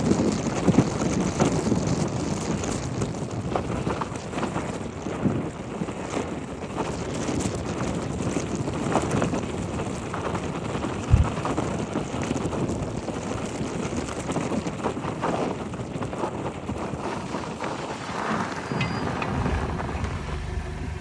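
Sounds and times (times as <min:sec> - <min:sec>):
road and wind noise: 0:00.0 - 0:21.0
dull low knock: 0:11.1 - 0:11.4.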